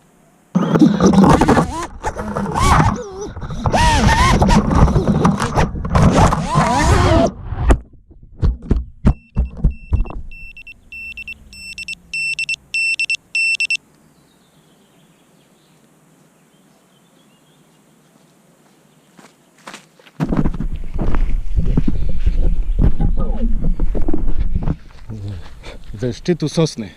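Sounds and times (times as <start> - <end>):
faint hiss: 0.0 - 0.6, 12.0 - 19.5
quadcopter buzzer beeping: 10.4 - 13.8.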